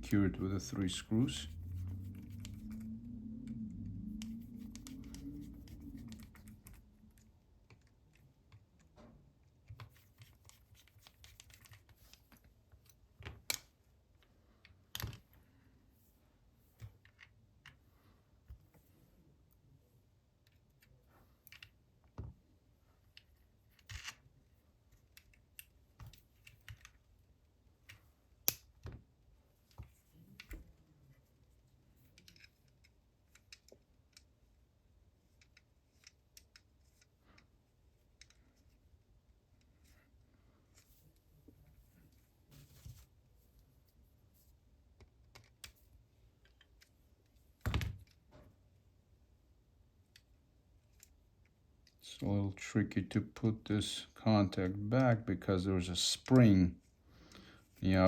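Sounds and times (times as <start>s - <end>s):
faint scratching: 0.0s - 7.4s.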